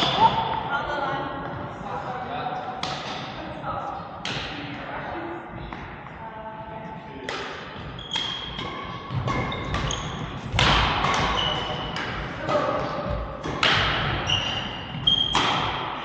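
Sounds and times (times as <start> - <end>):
court shoes squeaking: 0.0 - 0.7, 7.6 - 16.0
rackets hitting shuttlecock: 2.7 - 3.4, 4.2 - 4.8, 7.2 - 16.0.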